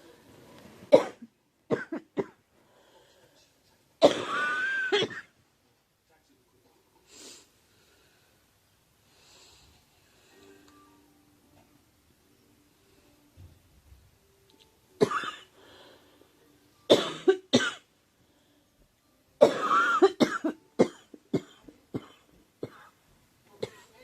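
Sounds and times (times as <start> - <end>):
girl coughing: 15.0 - 15.4, 16.9 - 17.8, 19.4 - 22.9, 23.6 - 23.9.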